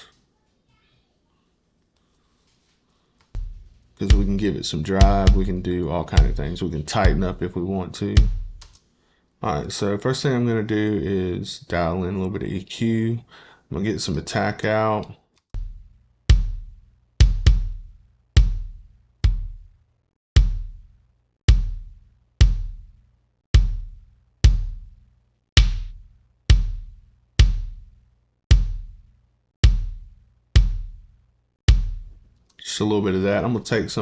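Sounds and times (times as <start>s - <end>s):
kick drum thumps: 3.4s - 7.6s, 8.2s - 8.7s, 15.6s - 19.8s, 20.4s - 32.4s.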